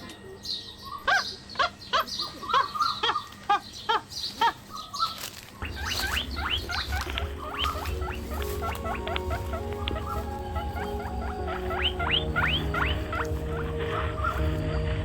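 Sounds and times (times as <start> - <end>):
animal calling: 0.0 - 15.0
birds chirping: 0.0 - 15.0
steady low hum: 5.6 - 15.0.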